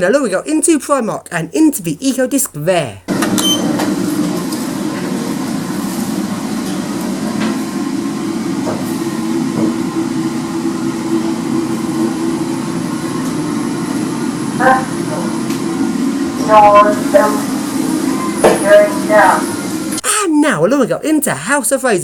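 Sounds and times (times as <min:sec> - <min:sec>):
lift hum and rumble: 0:04.8 - 0:20.0.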